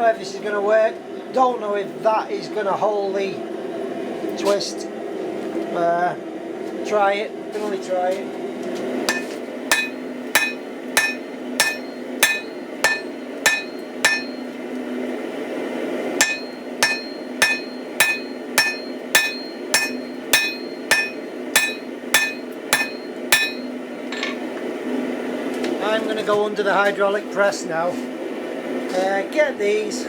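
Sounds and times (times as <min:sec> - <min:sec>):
steady low hum: 0:09.0 - 0:25.3
hammer striking steel on anvil: 0:09.1 - 0:14.6, 0:16.2 - 0:24.4.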